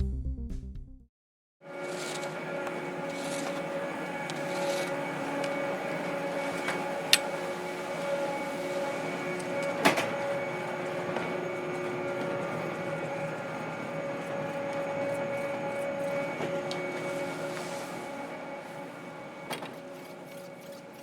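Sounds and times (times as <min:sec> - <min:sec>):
chairlift machinery hum: 0:01.7 - 0:21.0.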